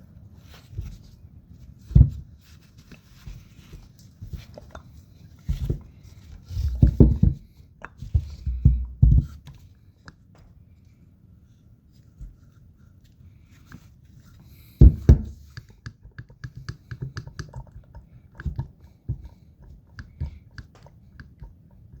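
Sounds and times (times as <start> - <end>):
heavy thumps: 6.5 - 7.5, 8.1 - 9.5, 14.7 - 15.5.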